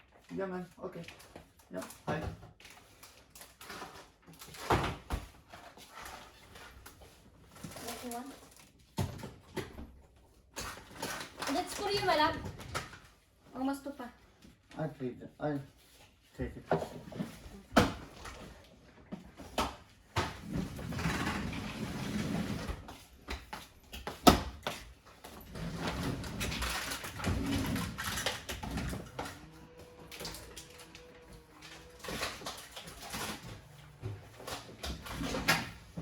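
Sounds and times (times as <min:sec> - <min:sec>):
knocks and clatter in kitchen: 0:01.2 - 0:02.6, 0:03.6 - 0:13.2, 0:16.6 - 0:31.0, 0:31.6 - 0:36.0
objects scraping and sliding: 0:20.2 - 0:23.2, 0:25.2 - 0:36.0.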